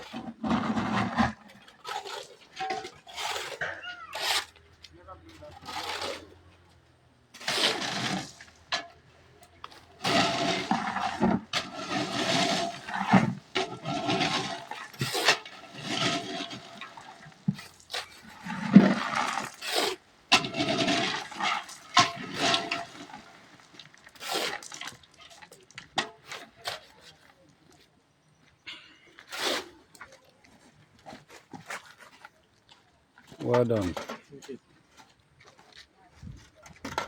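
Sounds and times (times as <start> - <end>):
wet concrete scraping and sloshing: 0.0 - 4.7, 5.4 - 6.5, 7.3 - 27.4.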